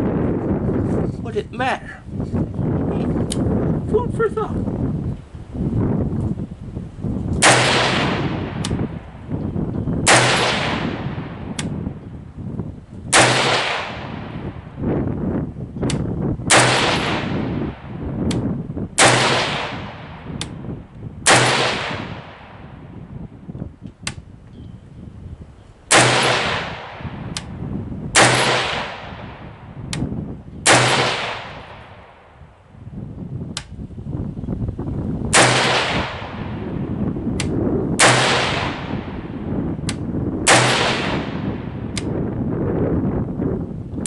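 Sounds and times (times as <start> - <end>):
rifle shots with ringing echo: 7.4 - 9.2, 10.0 - 11.8, 13.1 - 14.6, 16.5 - 18.0, 19.0 - 20.4, 21.2 - 22.9, 25.9 - 29.7, 30.6 - 32.4, 35.3 - 36.8, 38.0 - 39.4, 40.4 - 42.0.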